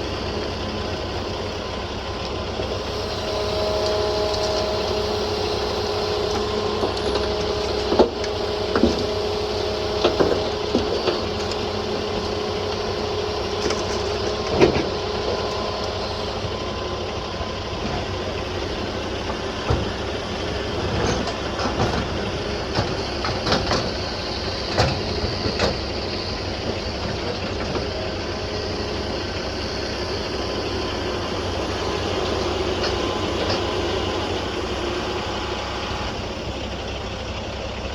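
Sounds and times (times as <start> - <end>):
excavator diesel engine whining: 0.0 - 37.9.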